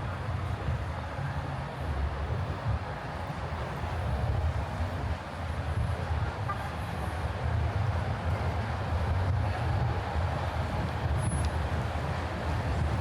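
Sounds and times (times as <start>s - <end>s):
low traffic rumble: 0.0s - 13.0s.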